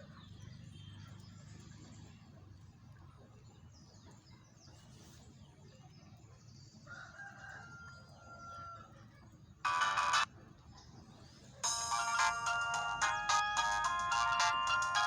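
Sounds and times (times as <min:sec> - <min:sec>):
faint chicken clucking: 0:05.5 - 0:11.0
rooster crowing faintly: 0:06.8 - 0:09.2
loud phone ringtone: 0:09.7 - 0:10.3, 0:11.6 - 0:15.0.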